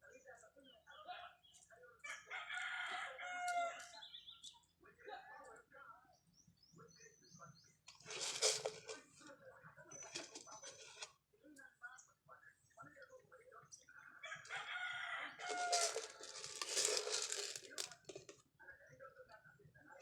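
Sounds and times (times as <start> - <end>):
birds calling faintly: 0.0 - 17.2
rooster crowing: 2.1 - 4.0, 14.2 - 16.3.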